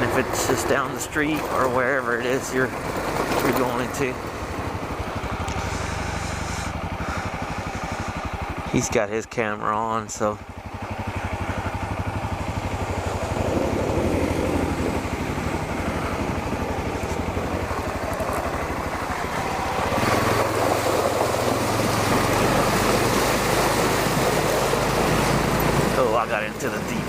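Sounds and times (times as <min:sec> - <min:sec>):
dirt bike engine running: 0:00.0 - 0:27.0
hiss over engine: 0:05.4 - 0:08.8.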